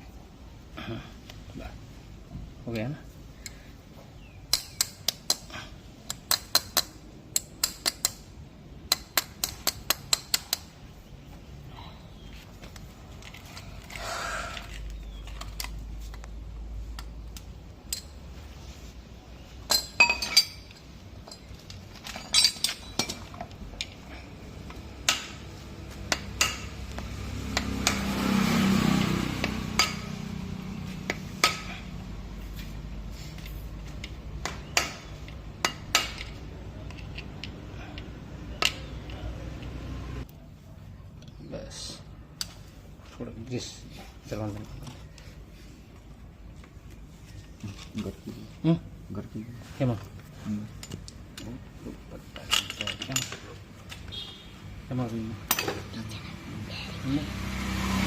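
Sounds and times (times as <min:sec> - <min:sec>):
hand tools clinking on metal: 0:19.6 - 0:25.5, 0:29.0 - 0:30.2, 0:52.2 - 0:54.0.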